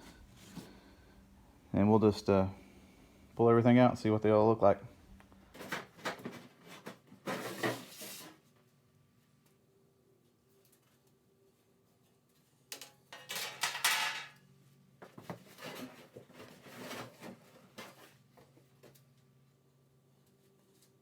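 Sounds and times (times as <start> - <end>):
scraping rustle: 5.6 - 8.5, 15.1 - 18.6
metallic clatters and knocks: 12.8 - 14.4.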